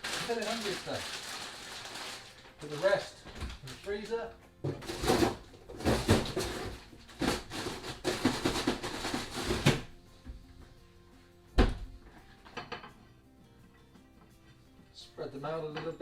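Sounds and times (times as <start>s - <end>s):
plastic bag rustling: 0.0s - 9.9s
faint background music: 0.0s - 16.0s
freezer door thump: 4.6s - 9.9s, 11.6s - 11.9s.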